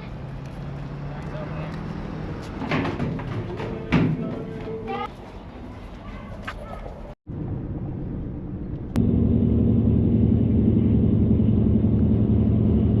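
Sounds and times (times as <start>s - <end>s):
vehicle engine rumble: 0.0s - 13.0s
low hum: 7.3s - 13.0s.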